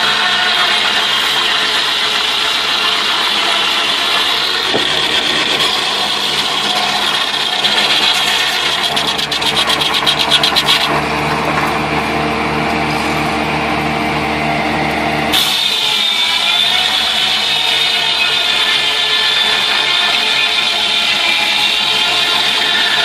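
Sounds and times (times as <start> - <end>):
sawmill machinery cutting wood: 0.0 - 23.0
fast rattling: 3.0 - 11.7.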